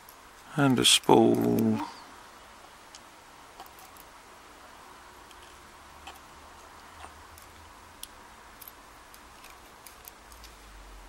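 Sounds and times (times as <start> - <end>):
padlock pin tumblers clicking: 0.0 - 1.8
tools being handled: 0.0 - 1.8, 3.6 - 4.1, 8.6 - 10.6.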